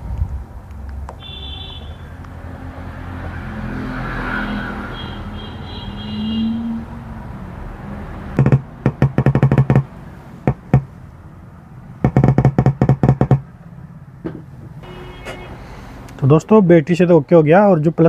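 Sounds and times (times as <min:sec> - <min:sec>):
speaker crackling and popping: 0:08.4 - 0:09.9.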